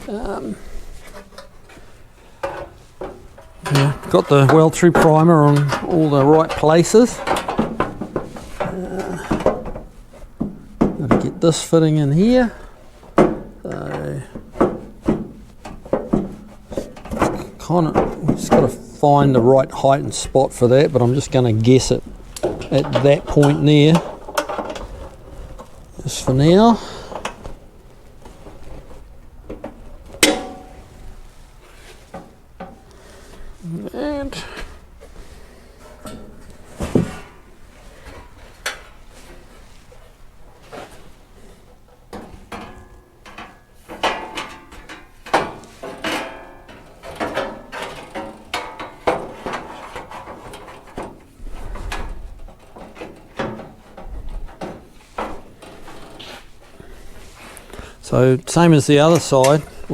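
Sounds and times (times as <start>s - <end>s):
sheet steel panels clanking: 0.0s - 59.9s
metal parts knocking: 2.4s - 27.5s, 29.4s - 30.9s
metallic clank: 29.5s - 31.2s, 42.2s - 51.2s.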